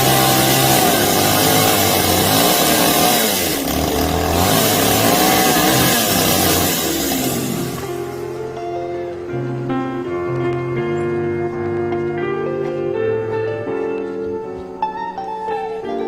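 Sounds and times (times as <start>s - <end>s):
power saw running: 0.0s - 8.6s.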